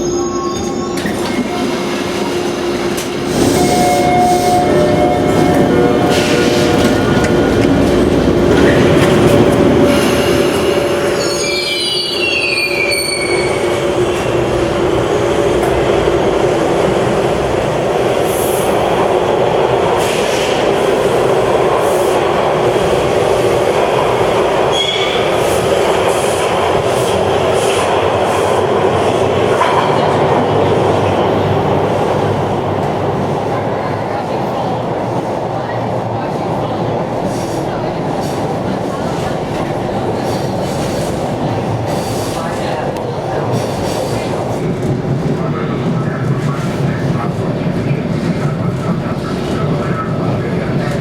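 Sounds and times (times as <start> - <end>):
subway train running on rails: 0.0 - 51.0
high squeal falling in pitch: 11.2 - 13.6.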